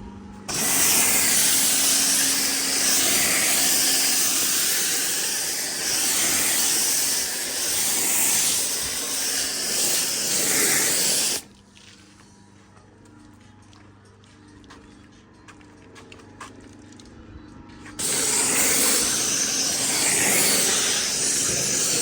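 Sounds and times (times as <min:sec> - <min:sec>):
sprayer hissing: 0:00.5 - 0:11.5, 0:18.0 - 0:22.0.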